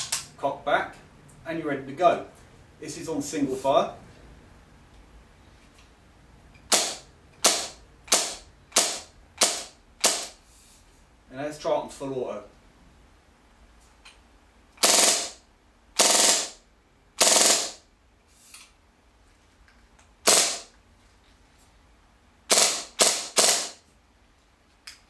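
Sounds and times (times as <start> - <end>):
airsoft pistol bursts: 6.7 - 10.4, 14.8 - 15.4, 16.0 - 16.6, 17.2 - 17.9, 20.2 - 20.7, 22.5 - 23.8.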